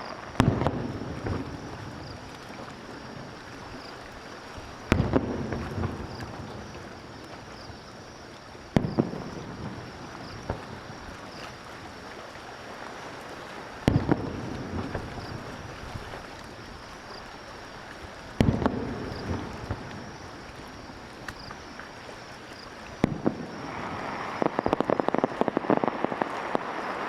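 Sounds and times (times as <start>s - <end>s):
small firework pops: 0.0s - 1.6s, 4.9s - 6.4s, 8.7s - 11.6s, 13.8s - 15.4s, 18.4s - 20.1s, 21.2s - 21.6s, 23.0s - 27.0s
firework shells booming: 0.0s - 2.0s, 4.9s - 6.4s, 8.7s - 10.8s, 13.8s - 15.5s, 18.4s - 20.2s, 23.0s - 27.0s.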